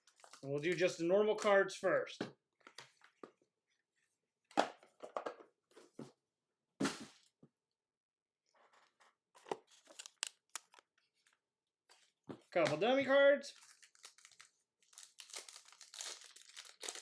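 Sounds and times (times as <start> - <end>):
packaging tearing crinkles: 0.0 - 0.4, 9.7 - 10.8, 13.6 - 17.0.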